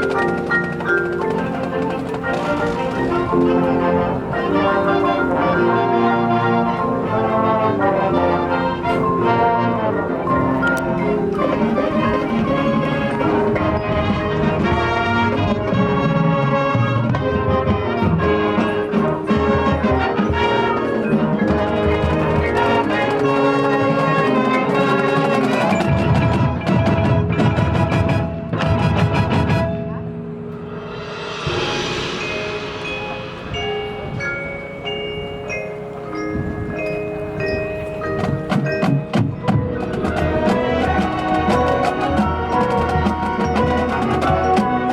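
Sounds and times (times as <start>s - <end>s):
brass chords and melody: 0.0s - 44.9s
mallet percussion: 0.0s - 44.9s
low drumming: 30.5s - 35.5s.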